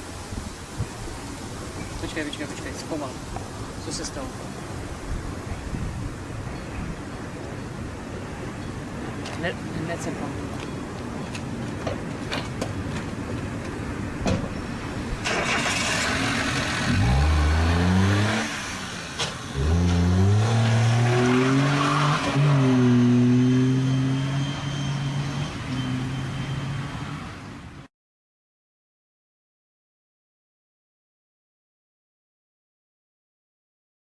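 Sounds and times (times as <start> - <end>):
car engine accelerating: 15.2 - 27.7.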